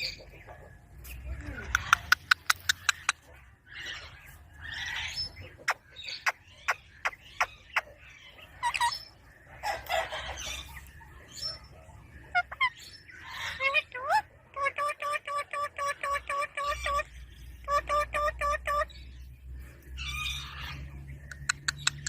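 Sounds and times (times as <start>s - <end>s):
parrot chattering calls: 8.6s - 9.0s.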